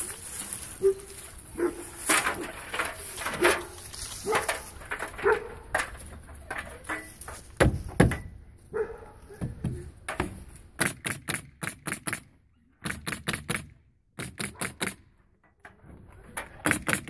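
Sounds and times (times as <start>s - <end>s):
heavy knocks: 7.6s - 8.4s.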